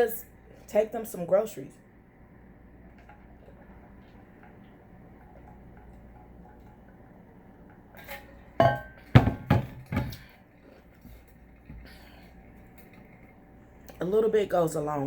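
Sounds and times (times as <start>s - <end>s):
tableware clattering: 8.0s - 10.3s.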